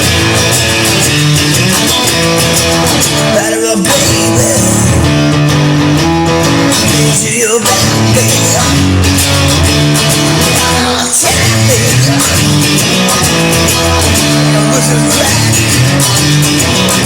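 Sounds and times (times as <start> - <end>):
rock guitar music with beat: 0.0 - 17.0.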